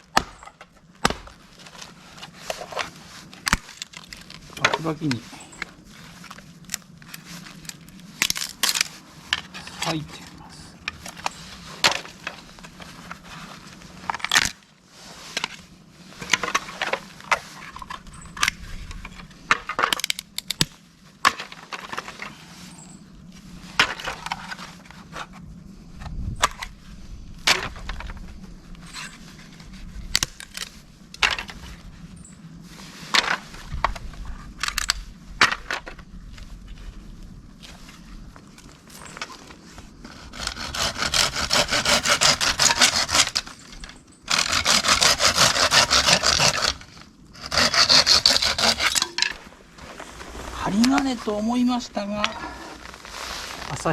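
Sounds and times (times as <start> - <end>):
bamboo cracking and splintering: 0.0 - 13.2, 14.0 - 14.7, 16.2 - 22.3, 29.6 - 31.6, 40.1 - 50.0.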